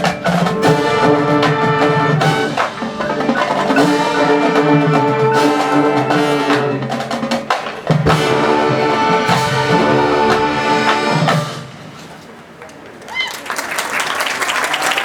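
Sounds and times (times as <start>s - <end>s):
drum and mallet percussion hits: 0.0s - 12.0s
marching band playing: 0.0s - 12.6s.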